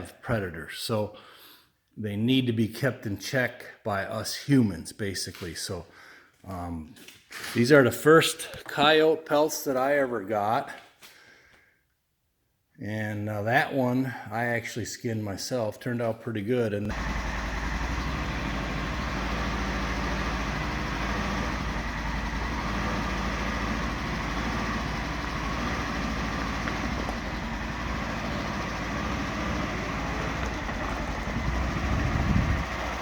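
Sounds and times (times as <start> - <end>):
vehicle engine idling: 16.9 - 33.0.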